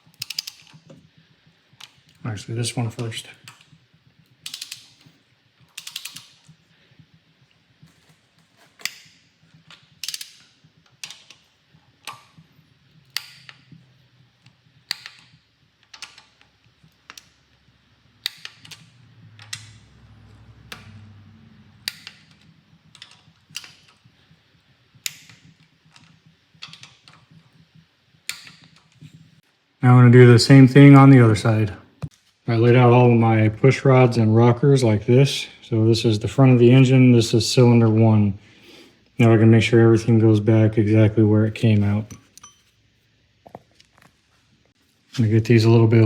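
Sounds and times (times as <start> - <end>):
torque wrench clicking: 0.0 - 1.0, 4.3 - 6.5, 8.8 - 12.4.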